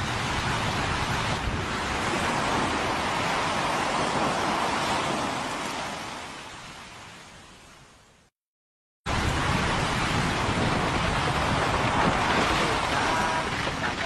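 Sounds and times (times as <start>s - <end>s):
steady rushing noise: 0.0s - 5.8s, 9.1s - 14.0s.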